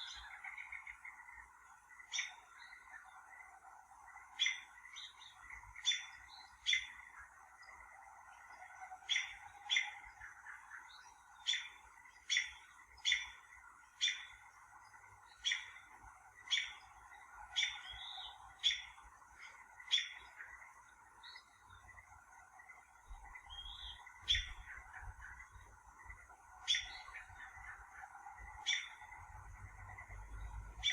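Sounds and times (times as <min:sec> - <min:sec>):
bird chirping: 0:00.0 - 0:30.9.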